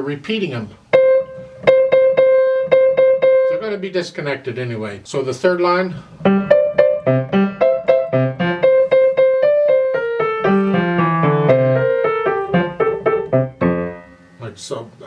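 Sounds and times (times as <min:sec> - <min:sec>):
piano melody: 0:00.8 - 0:03.9, 0:06.2 - 0:14.5.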